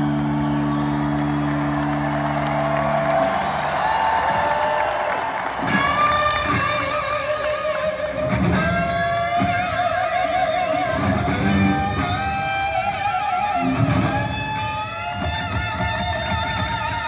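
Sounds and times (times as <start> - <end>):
low bass notes: 0.0 - 1.6
electric guitar lead notes: 5.7 - 17.0.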